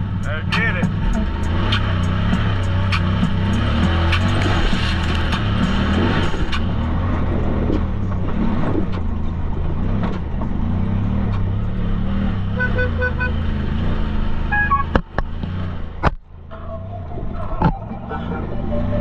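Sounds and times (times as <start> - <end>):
vehicle engine running: 0.0 - 19.0
short beeps: 14.5 - 15.0.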